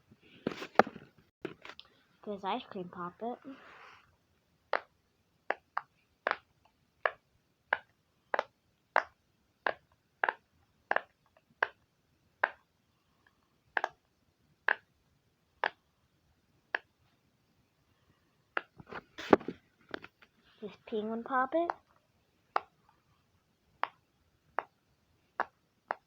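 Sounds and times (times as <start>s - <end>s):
pop-it toy bubbles popping: 5.5s - 11.8s, 12.4s - 12.6s, 13.8s - 14.0s, 14.7s - 14.9s, 25.4s - 26.0s.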